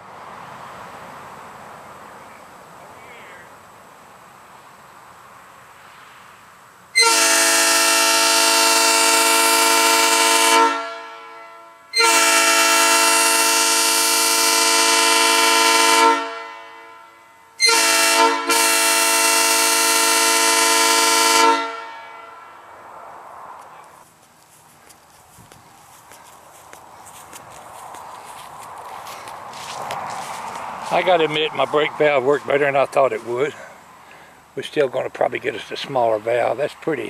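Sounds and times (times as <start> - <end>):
train air horn blasts: 7.0 - 22.7.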